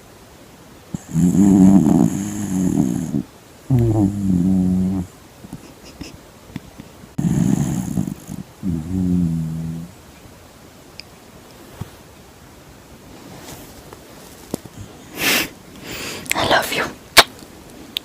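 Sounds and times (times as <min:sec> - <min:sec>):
dog snoring: 0:00.9 - 0:05.1, 0:07.2 - 0:09.9.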